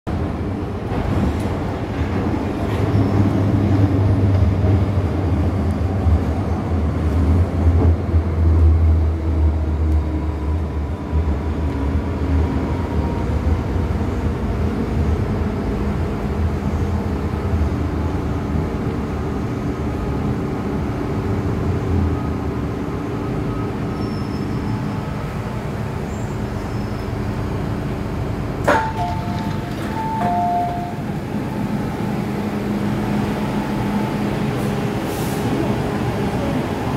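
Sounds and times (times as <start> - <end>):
train wheels rumbling on rail: 0.1 - 36.9.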